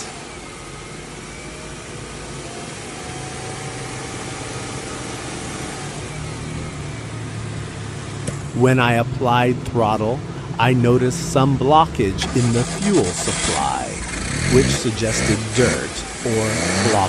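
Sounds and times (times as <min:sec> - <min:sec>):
car engine idling roughly: 0:12.0 - 0:17.0.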